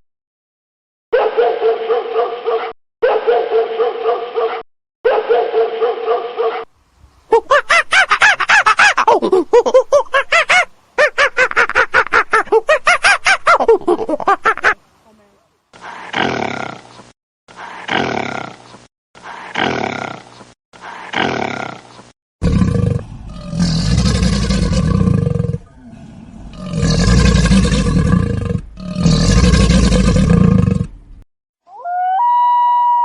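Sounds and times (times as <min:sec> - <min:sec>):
large wild animal roaring: 0:22.4 - 0:31.0
animal call: 0:31.7 - 0:33.0.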